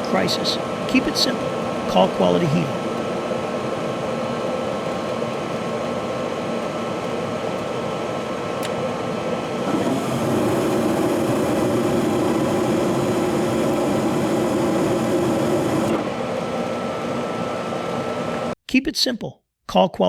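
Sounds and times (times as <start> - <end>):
furnace humming: 0.0 - 18.6.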